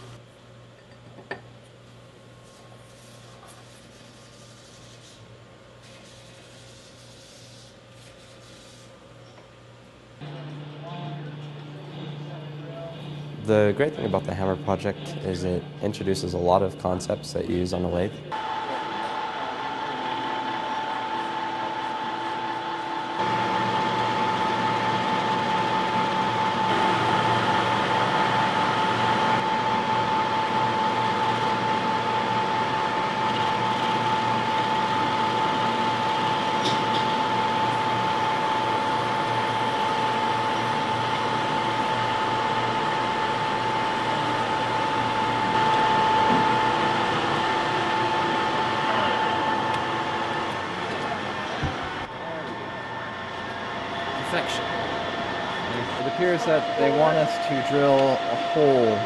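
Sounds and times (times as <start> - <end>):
metal lathe whining: 18.4 - 59.0.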